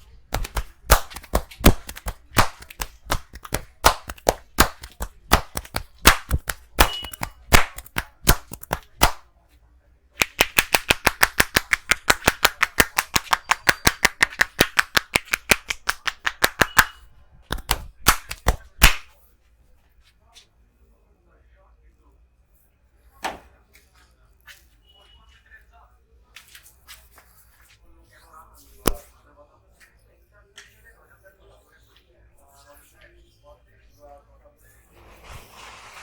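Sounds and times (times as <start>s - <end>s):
hands slapping skin: 0.0s - 9.3s, 10.2s - 19.1s, 28.8s - 29.0s.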